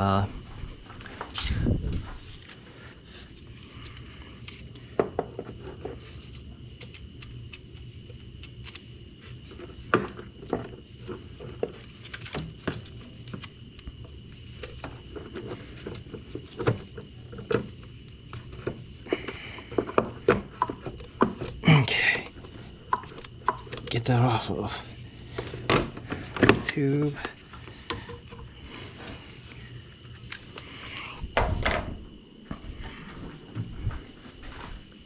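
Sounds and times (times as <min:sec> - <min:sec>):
hand tools clicking and knocking: 0:19.1 - 0:24.5.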